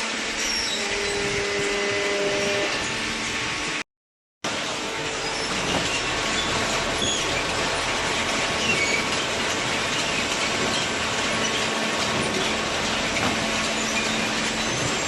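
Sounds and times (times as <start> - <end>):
high-pitched metallic squeaks: 0.1 - 3.5, 4.7 - 15.0
baler machine running: 4.5 - 15.0.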